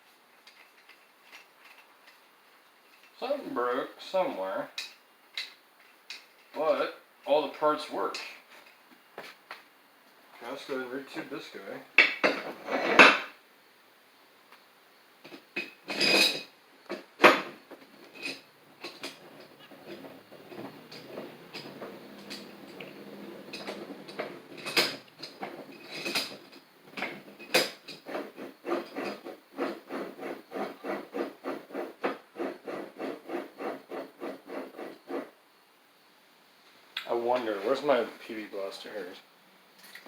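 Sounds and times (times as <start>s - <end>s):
vise screw grinding in threads: 18.0s - 35.3s
metal vise clanks: 18.2s - 29.3s.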